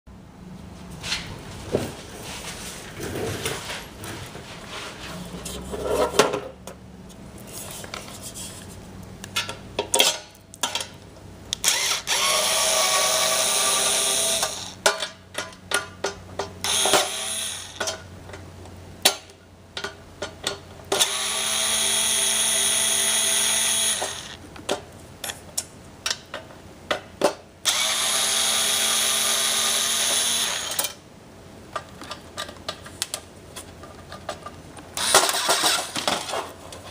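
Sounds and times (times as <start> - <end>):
electric power tool running: 11.6 - 14.8, 16.6 - 17.8, 21.0 - 24.4, 27.7 - 30.9, 35.0 - 36.0.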